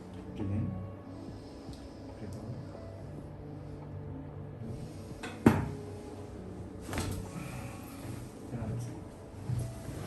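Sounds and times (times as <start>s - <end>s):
faint background music: 0.0s - 10.0s.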